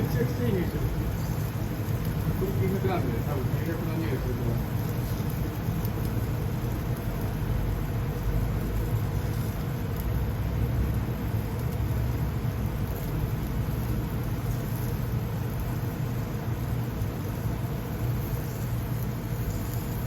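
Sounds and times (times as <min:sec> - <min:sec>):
gas grill rumbling: 0:00.0 - 0:20.0.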